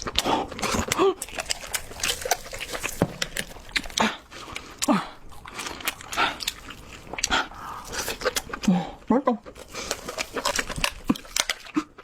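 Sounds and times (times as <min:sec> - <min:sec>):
chewing seafood: 0:00.0 - 0:12.0.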